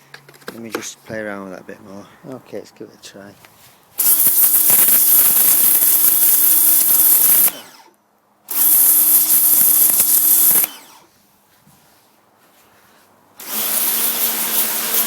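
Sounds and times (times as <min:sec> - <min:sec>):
pressure washer motor hum: 0:04.0 - 0:07.8, 0:08.5 - 0:11.0, 0:13.4 - 0:15.0
loud hiss of water spray: 0:13.4 - 0:15.0.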